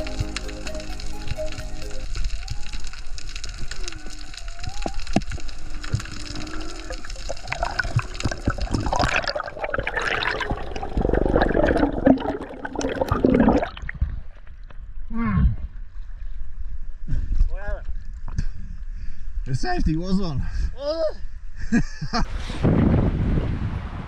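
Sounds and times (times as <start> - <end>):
underwater water rushing and bubbling: 0.0 - 14.7.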